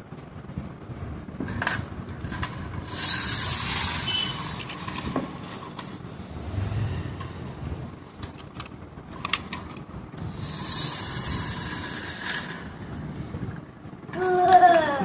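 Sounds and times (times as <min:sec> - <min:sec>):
toy car wheels rattling on floor: 0:01.4 - 0:06.0, 0:08.2 - 0:13.2, 0:14.1 - 0:15.0
hissing scrape: 0:02.9 - 0:08.0.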